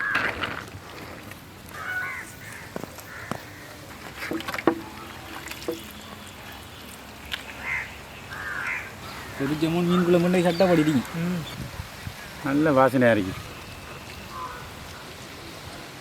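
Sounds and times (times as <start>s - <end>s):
crows cawing: 1.8s - 3.7s, 7.6s - 11.1s, 14.3s - 14.8s.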